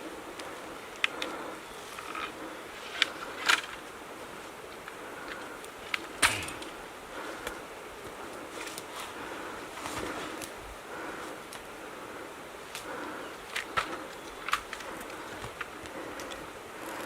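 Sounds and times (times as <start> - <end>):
faint steady hum: 0.0 - 17.0
branches snapping: 5.9 - 7.6.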